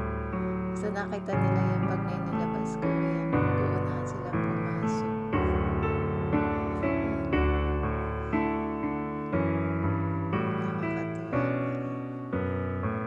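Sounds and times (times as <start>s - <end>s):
piano chords: 0.0s - 13.0s.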